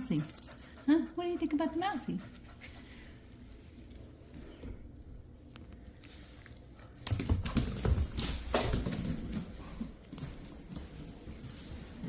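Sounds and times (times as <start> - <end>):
toy electronic squeak chirps: 0.0 - 0.8, 10.2 - 11.8.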